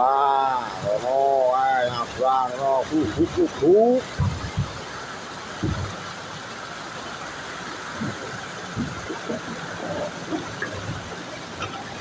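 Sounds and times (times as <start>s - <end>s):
low knocks: 4.1s - 4.8s, 5.6s - 6.0s.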